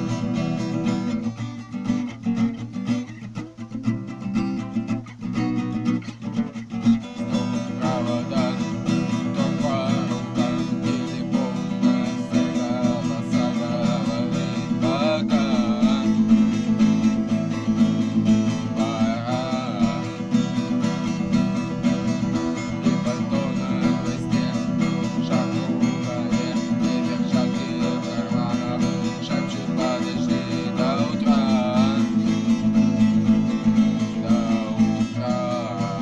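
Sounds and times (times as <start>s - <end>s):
acoustic guitar strumming: 0.0s - 36.0s.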